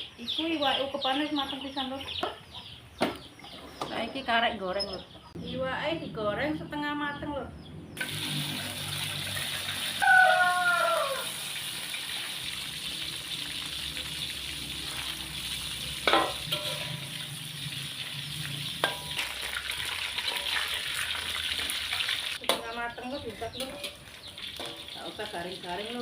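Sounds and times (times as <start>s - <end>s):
chicken sizzling in hot oil: 8.0s - 22.6s.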